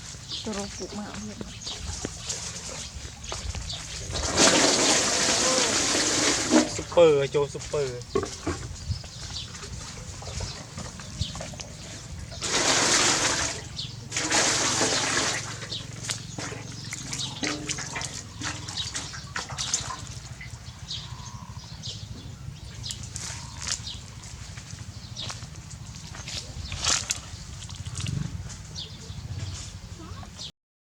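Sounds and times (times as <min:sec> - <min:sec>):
water pouring: 0:04.0 - 0:07.0, 0:11.6 - 0:20.6
water dripping: 0:11.6 - 0:20.7.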